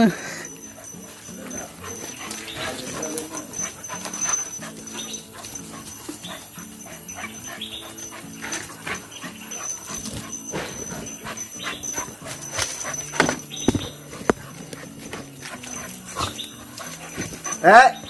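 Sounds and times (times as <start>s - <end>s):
background music: 0.0s - 18.0s
dogs play-fighting: 0.0s - 18.0s.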